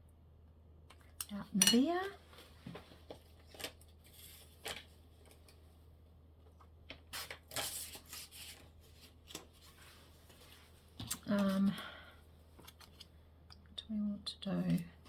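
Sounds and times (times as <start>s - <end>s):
paper rustling: 2.3s - 5.6s, 6.9s - 11.8s.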